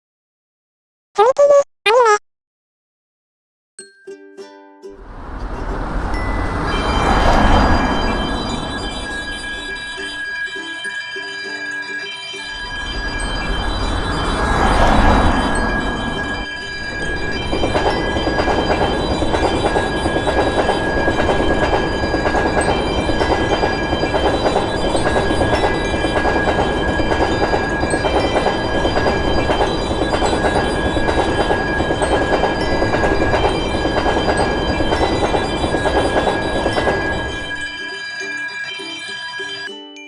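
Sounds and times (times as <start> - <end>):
train wheels clattering on rails: 12.9 - 37.7.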